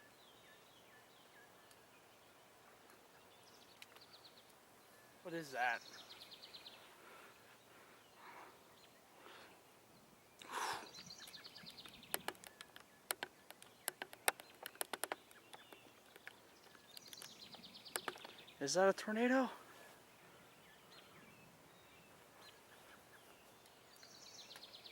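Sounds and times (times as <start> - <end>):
faint outdoor ambience: 0.0 - 24.9
sharp clicks: 11.2 - 18.4.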